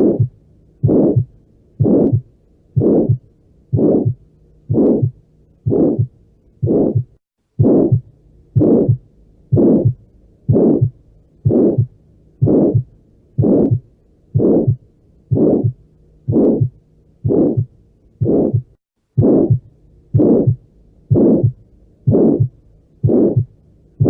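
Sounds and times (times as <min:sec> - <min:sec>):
harsh heart murmur: 0:00.0 - 0:23.6.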